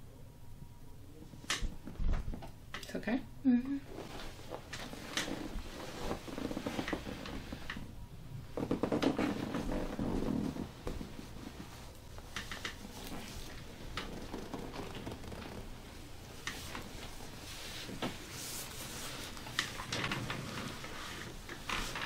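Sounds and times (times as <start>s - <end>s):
hands rubbing skin and clothing: 3.9s - 7.8s, 8.6s - 19.8s.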